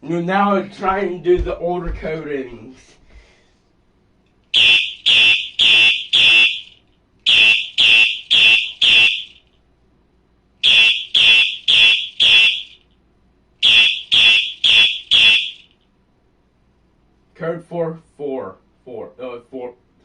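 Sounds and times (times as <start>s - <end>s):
fire alarm horn blasts: 4.5s - 9.4s, 10.6s - 12.9s, 13.6s - 15.8s.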